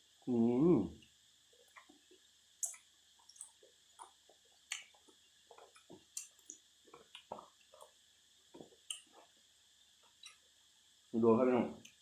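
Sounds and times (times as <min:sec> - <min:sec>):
wet chewing and lip smacks: 0:01.6 - 0:09.4.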